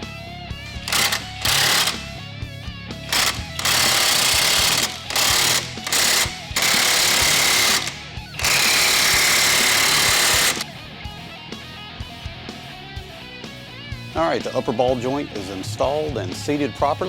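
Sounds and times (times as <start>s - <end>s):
guitar music: 0.0s - 15.1s
air impact wrench hammering: 0.8s - 2.2s, 3.1s - 10.7s.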